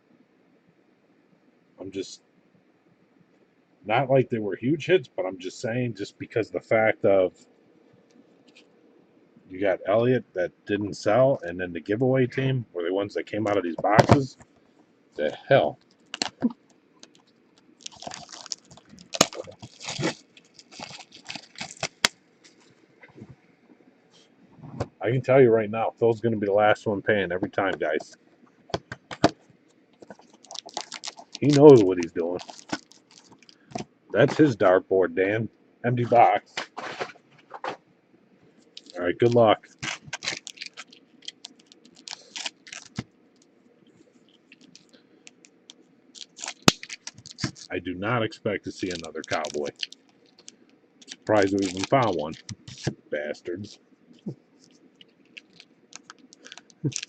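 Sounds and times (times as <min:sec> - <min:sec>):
packaging crinkling: 0:15.8 - 0:22.7, 0:30.0 - 0:33.8, 0:38.7 - 0:43.5, 0:44.3 - 0:47.7, 0:48.8 - 0:53.0, 0:54.6 - 0:57.0.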